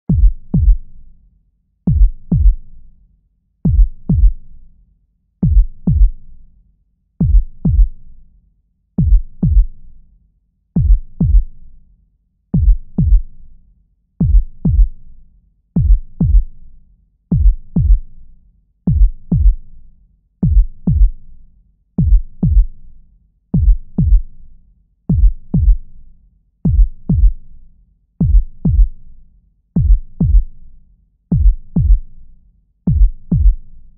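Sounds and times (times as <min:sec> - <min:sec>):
heartbeat thumps: 0:00.1 - 0:00.8, 0:01.9 - 0:02.6, 0:03.7 - 0:04.4, 0:05.4 - 0:06.2, 0:07.2 - 0:08.0, 0:09.0 - 0:09.7, 0:10.8 - 0:11.5, 0:12.6 - 0:13.3, 0:14.2 - 0:14.9, 0:15.8 - 0:16.5, 0:17.3 - 0:18.0, 0:18.9 - 0:19.6, 0:20.4 - 0:21.2, 0:22.0 - 0:22.7, 0:23.6 - 0:24.3, 0:25.1 - 0:25.8, 0:26.7 - 0:27.4, 0:28.2 - 0:29.0, 0:29.8 - 0:30.5, 0:31.3 - 0:32.0, 0:32.9 - 0:33.6.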